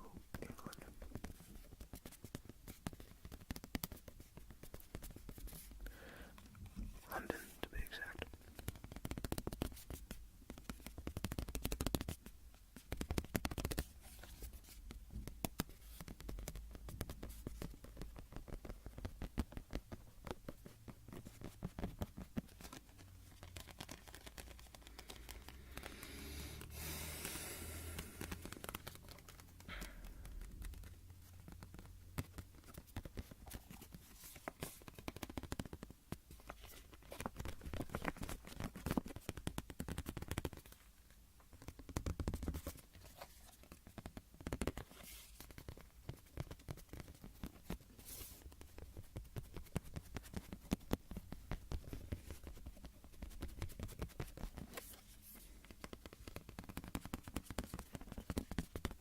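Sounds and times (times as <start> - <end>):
scratching and small clicks: 27.9 - 59.0.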